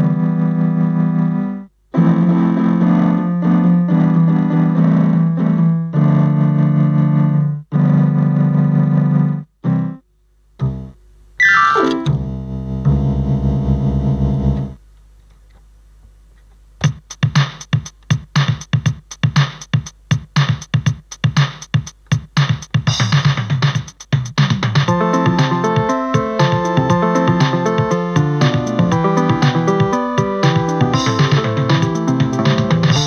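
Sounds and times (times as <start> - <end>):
electronic keyboard playing: 0.0 - 10.0, 10.6 - 13.1, 24.4 - 33.0.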